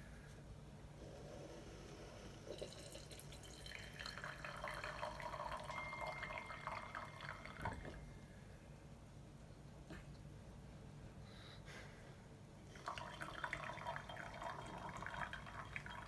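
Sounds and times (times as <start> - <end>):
coffee dripping into a mug: 2.5 - 8.0, 12.8 - 16.0.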